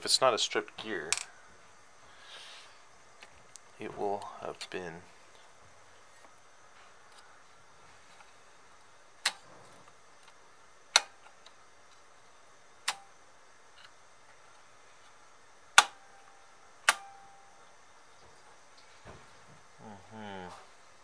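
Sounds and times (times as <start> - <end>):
sharp clicks of plastic parts: 9.2 - 12.0, 12.8 - 13.1, 15.8 - 16.0, 16.8 - 17.2.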